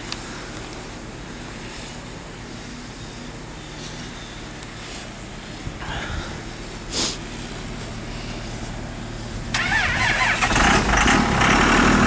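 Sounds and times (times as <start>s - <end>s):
diesel engine running: 0.0s - 12.0s
starter motor whining and cranking: 9.5s - 11.4s.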